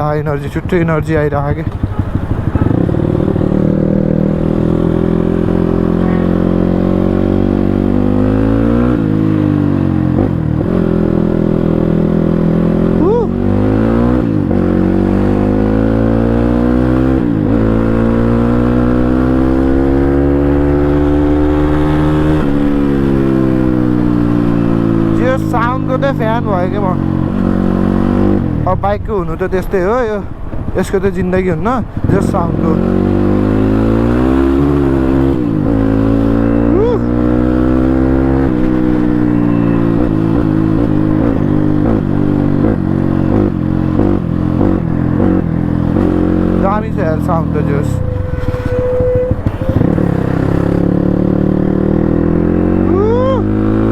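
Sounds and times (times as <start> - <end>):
loud motorcycle engine: 0.0 - 53.9.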